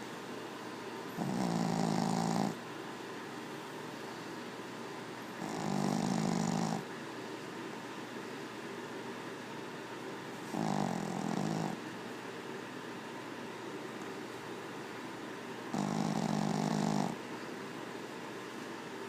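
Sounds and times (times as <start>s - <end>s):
dog snoring: 1.1s - 2.6s, 5.3s - 6.9s, 10.4s - 11.8s, 15.7s - 17.2s.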